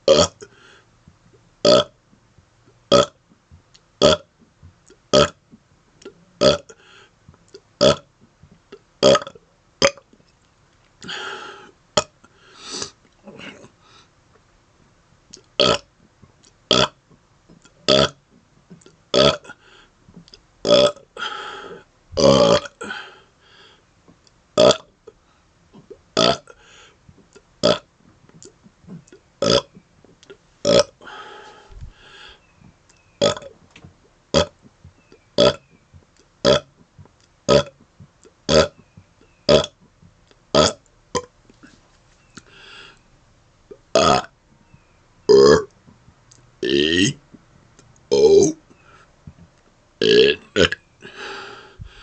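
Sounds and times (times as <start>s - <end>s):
man burping loudly: 0.0s - 0.5s, 1.6s - 2.0s, 2.9s - 3.2s, 4.0s - 4.3s, 5.1s - 5.4s, 6.4s - 6.8s, 7.8s - 8.1s, 9.0s - 10.0s, 15.5s - 15.9s, 16.7s - 17.0s, 17.9s - 18.2s, 19.1s - 19.6s, 20.6s - 23.2s, 24.6s - 24.9s, 26.2s - 26.6s, 27.6s - 27.9s, 29.4s - 29.7s, 30.6s - 31.2s, 33.2s - 33.5s, 34.3s - 34.6s, 36.4s - 36.7s, 37.5s - 37.8s, 38.5s - 38.8s, 39.5s - 39.8s, 40.5s - 41.3s, 43.9s - 44.3s, 45.3s - 45.7s, 46.6s - 47.2s, 48.1s - 48.6s, 50.0s - 51.5s.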